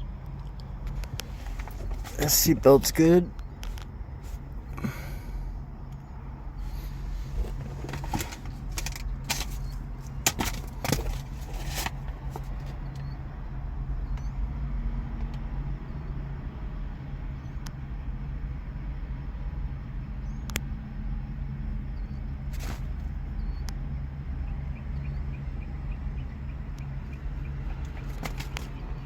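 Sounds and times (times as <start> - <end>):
steady low hum: 0.0 - 29.0
car interior fittings clicking: 7.3 - 13.1.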